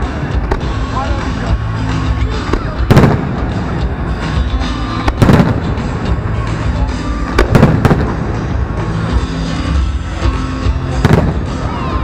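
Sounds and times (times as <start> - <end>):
music playing: 0.0 - 12.0
fireworks bursting in loud booms: 2.4 - 4.1, 4.9 - 6.2, 7.2 - 8.8, 10.9 - 12.0.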